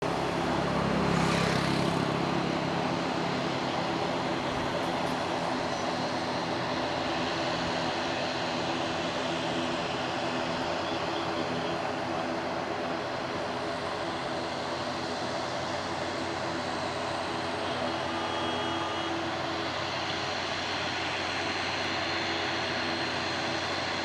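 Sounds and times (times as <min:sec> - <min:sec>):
airliner engines taxiing: 0:00.0 - 0:24.0.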